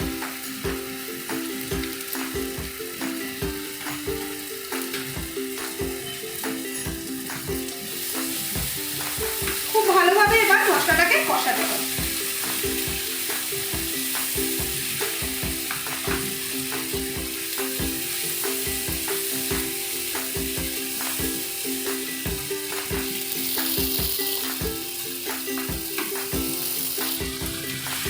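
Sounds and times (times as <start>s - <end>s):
masala sizzling in oil: 0.0s - 28.0s
spoon knocking on pan: 1.7s - 28.0s.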